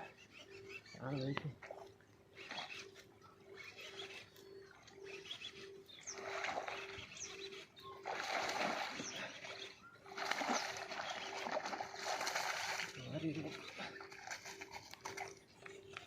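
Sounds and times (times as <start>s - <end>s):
faint bird chirps: 0.0s - 16.0s
water splashing and sloshing: 6.0s - 15.8s.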